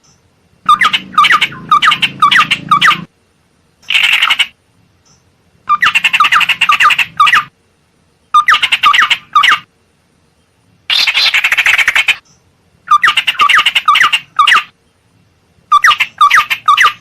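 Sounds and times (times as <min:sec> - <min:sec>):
bird chattering and whistling: 0:00.6 - 0:03.1, 0:03.9 - 0:07.5, 0:08.3 - 0:09.7, 0:10.9 - 0:14.8, 0:15.7 - 0:17.0.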